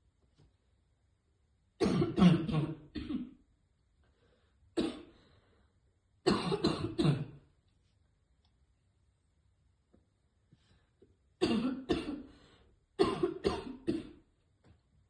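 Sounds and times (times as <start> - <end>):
woman coughing: 1.8 - 3.4, 6.3 - 7.4, 11.4 - 12.3, 13.0 - 14.2.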